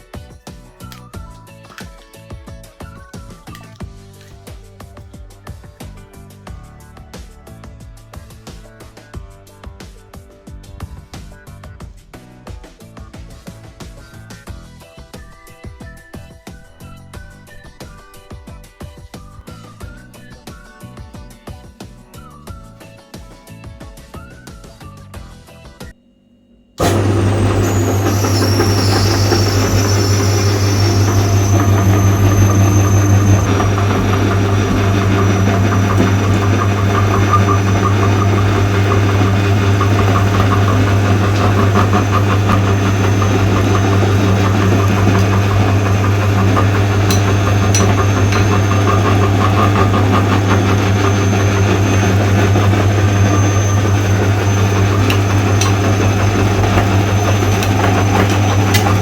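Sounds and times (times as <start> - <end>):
electric meat grinder humming: 26.8 - 59.0.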